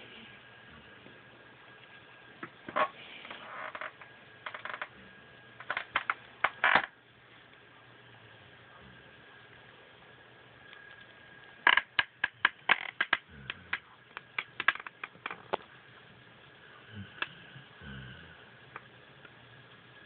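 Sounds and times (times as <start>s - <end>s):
dog snoring: 13.2s - 13.9s, 16.8s - 18.6s.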